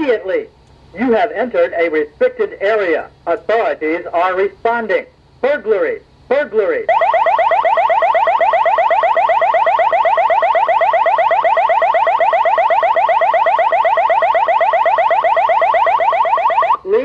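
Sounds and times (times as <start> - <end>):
siren rising sweep: 6.9 - 16.8.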